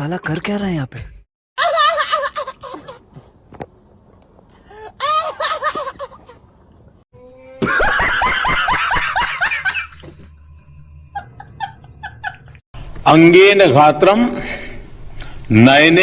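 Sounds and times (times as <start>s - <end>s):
snickering laugh: 1.6s - 3.2s, 5.0s - 6.5s, 7.6s - 10.2s
rapid laughter: 7.6s - 10.2s.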